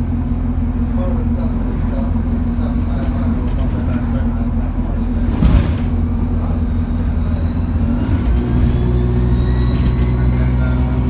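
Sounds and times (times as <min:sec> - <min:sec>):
bus engine running: 0:00.0 - 0:11.0
turbo whine: 0:05.2 - 0:11.0.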